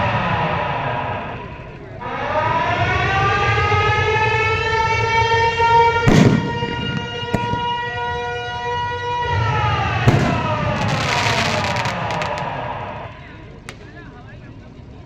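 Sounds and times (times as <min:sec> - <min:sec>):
air-raid siren wailing: 0:00.0 - 0:13.6
loud bangs: 0:06.0 - 0:08.2, 0:09.8 - 0:12.9
sharp cracks: 0:06.1 - 0:08.0, 0:10.1 - 0:12.6.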